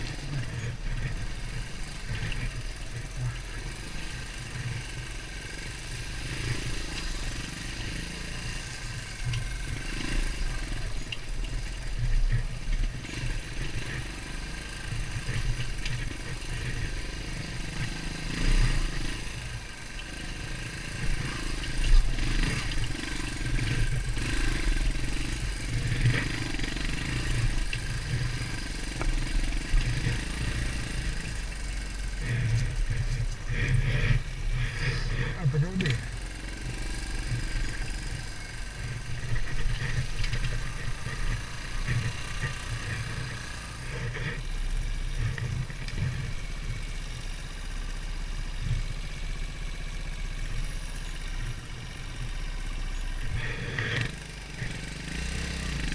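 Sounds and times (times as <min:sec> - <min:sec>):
dirt bike engine running: 0:00.0 - 0:55.9.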